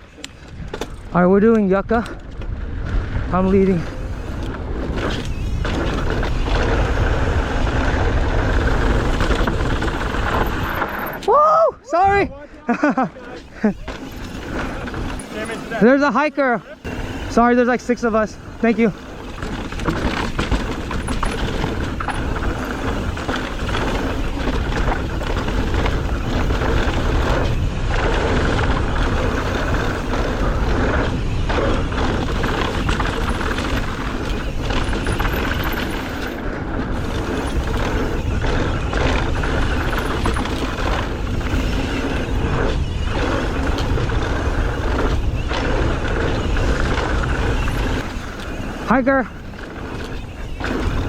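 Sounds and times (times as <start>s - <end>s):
tyres rolling on dirt: 0.0s - 11.4s, 12.0s - 51.0s
wind rushing over microphone: 0.0s - 12.4s, 16.8s - 51.0s
bike knocking over bumps: 19.1s - 48.7s.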